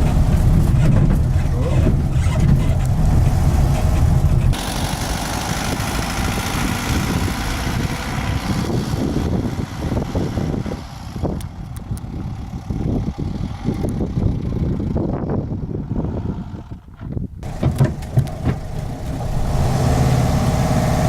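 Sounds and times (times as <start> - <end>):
even rushing noise: 0.0 - 11.2, 17.4 - 21.0
van engine rumbling: 0.0 - 21.0.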